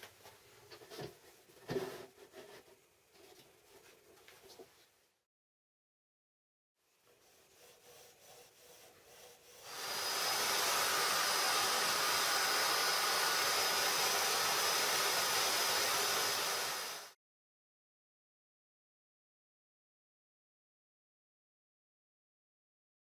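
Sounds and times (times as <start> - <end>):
bandsaw cutting with hiss and whine: 9.1 - 17.2.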